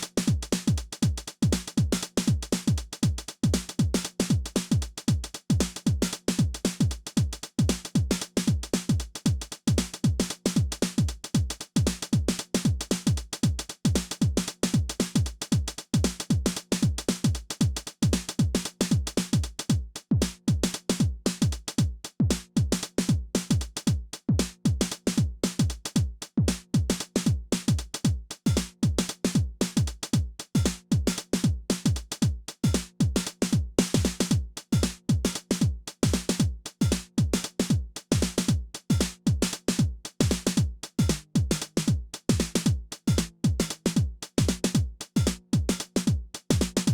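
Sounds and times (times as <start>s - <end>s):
hi-hats: 0.0s - 46.9s
kick drum pulsing: 0.3s - 46.9s.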